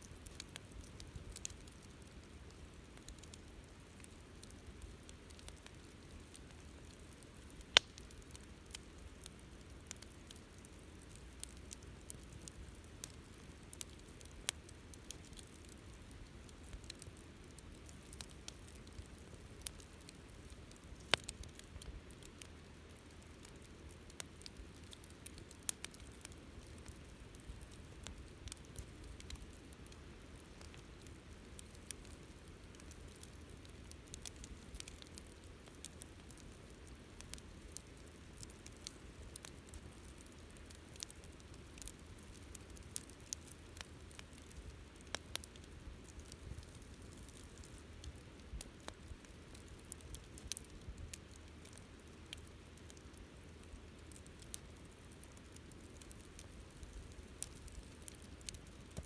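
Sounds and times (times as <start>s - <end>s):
campfire crackling: 0.0s - 59.0s
campfire pops: 7.6s - 9.3s, 37.2s - 53.2s.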